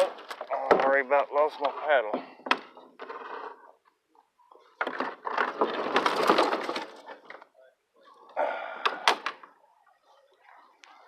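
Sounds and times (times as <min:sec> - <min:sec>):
rustling and scraping: 0:00.0 - 0:07.5.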